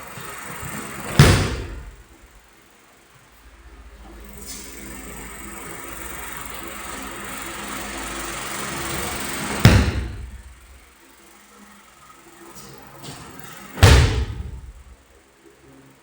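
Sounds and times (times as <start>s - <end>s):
body thudding on a mat: 1.1s - 2.2s, 9.6s - 10.6s, 13.8s - 14.9s.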